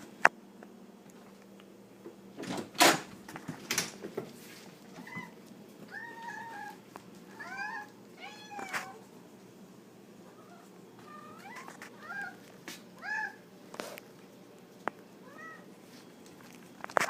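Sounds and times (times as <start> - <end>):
cat meowing: 5.0 - 9.0, 10.4 - 12.4, 13.0 - 13.4.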